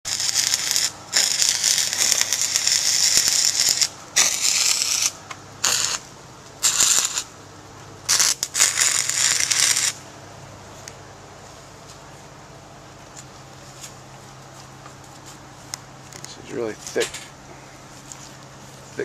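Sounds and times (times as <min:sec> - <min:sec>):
welding arc crackling and sizzling: 0:00.0 - 0:07.4, 0:08.0 - 0:10.1.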